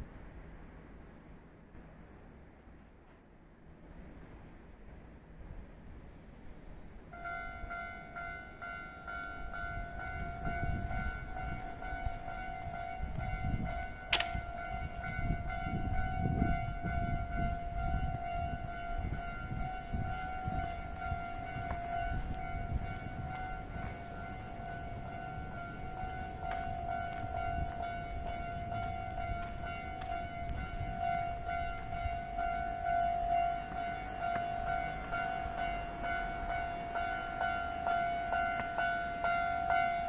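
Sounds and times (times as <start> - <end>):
electric train rumbling: 0.0 - 40.0
level crossing warning bell: 7.0 - 40.0
sharp crack: 14.1 - 14.5.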